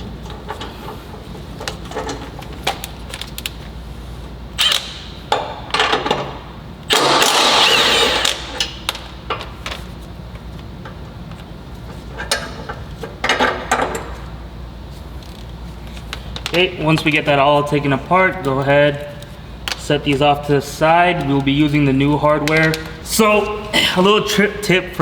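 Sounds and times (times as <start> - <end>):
power tool loosening bolts: 4.6 - 5.0, 6.9 - 8.8.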